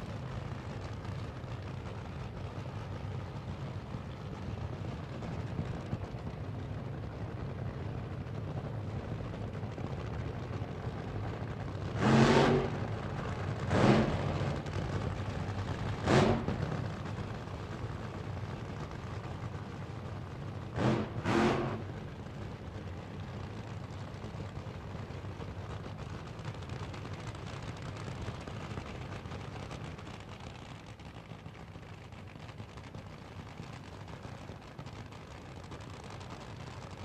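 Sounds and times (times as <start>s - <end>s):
sports car engine idling: 0.0s - 37.0s
engine revving bursts: 12.0s - 13.0s, 13.7s - 14.6s, 16.0s - 16.7s, 20.8s - 21.9s.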